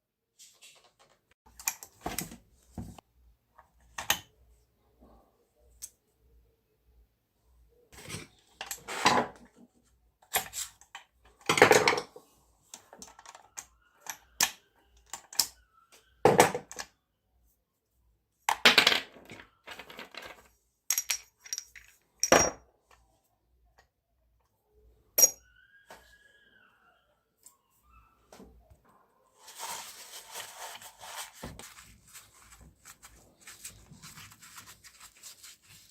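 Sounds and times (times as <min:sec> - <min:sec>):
metal tools clinking: 0:20.9 - 0:22.6, 0:25.2 - 0:25.4.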